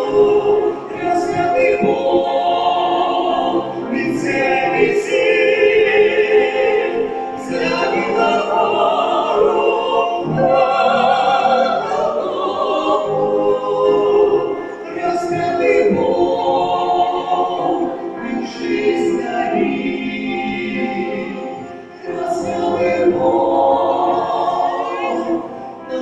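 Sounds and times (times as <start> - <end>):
vocal trio singing in harmony: 0.0 - 26.0.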